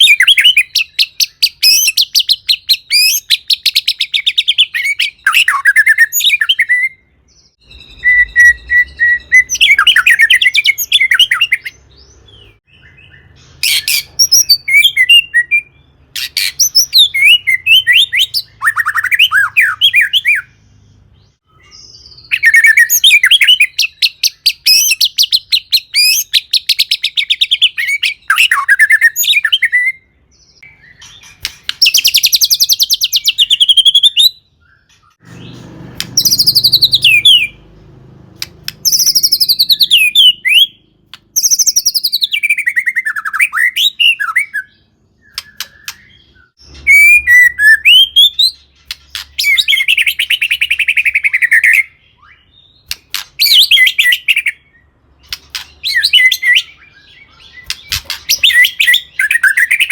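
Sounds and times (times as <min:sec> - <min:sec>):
songbird singing rapid trills: 0:30.6 - 0:59.9.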